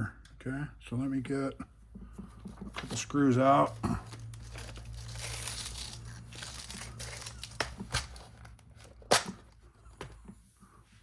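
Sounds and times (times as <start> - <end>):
plastic bag crinkling: 4.1 - 8.7.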